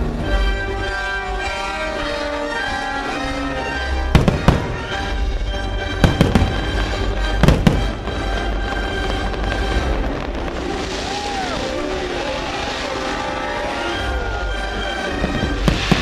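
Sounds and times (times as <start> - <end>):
orchestral music: 0.0 - 16.0
fireworks sharp bangs: 4.1 - 5.2, 5.9 - 16.0.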